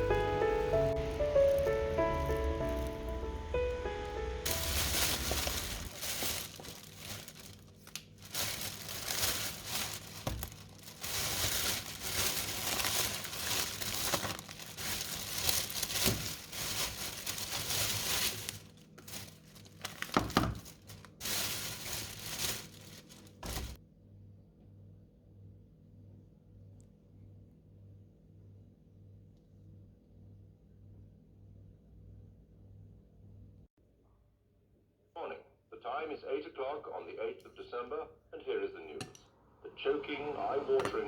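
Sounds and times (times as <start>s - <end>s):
crinkling and rustling: 0.0s - 23.8s.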